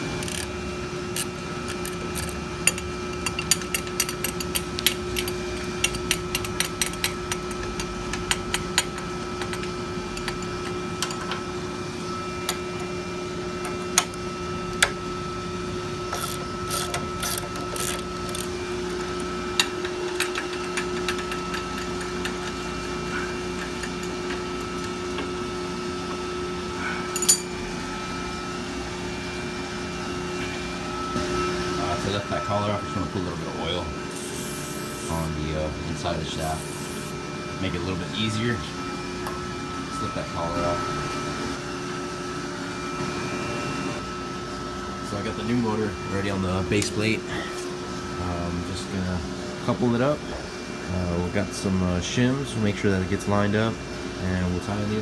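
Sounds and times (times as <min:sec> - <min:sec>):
machinery hum: 0:00.0 - 0:55.0
hand tools clicking against metal: 0:00.2 - 0:00.5, 0:01.2 - 0:11.3, 0:16.2 - 0:24.9.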